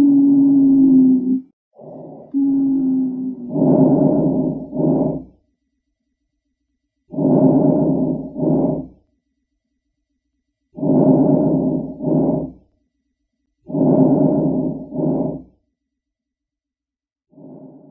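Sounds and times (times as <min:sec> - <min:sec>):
wheezing breaths: 0:02.3 - 0:05.4, 0:07.1 - 0:09.0, 0:10.8 - 0:12.6, 0:13.7 - 0:15.5.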